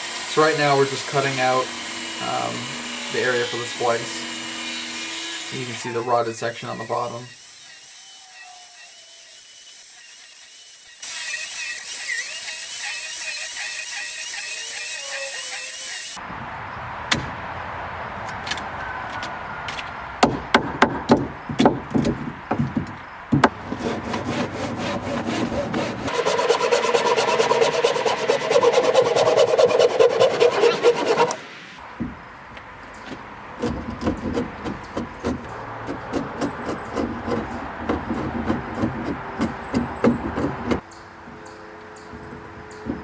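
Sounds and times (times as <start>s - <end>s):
hand saw cutting wood: 0.0s - 16.2s, 23.5s - 31.4s, 33.6s - 40.8s
knocks on wooden post: 20.2s - 23.6s.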